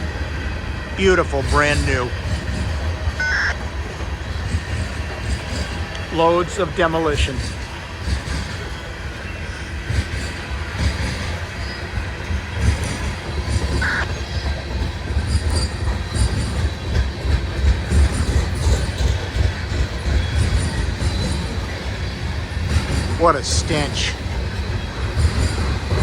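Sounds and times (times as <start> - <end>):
freight train wheels rumbling: 0.0 - 26.0
high wheel squeal: 1.0 - 26.0
wheels clacking over rail joints: 9.8 - 26.0.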